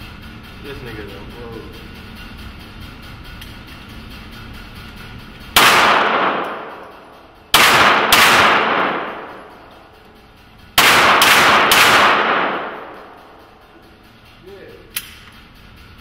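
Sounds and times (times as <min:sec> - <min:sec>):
handgun shots echoing indoors: 0:05.6 - 0:10.0, 0:10.8 - 0:13.6, 0:14.9 - 0:15.4.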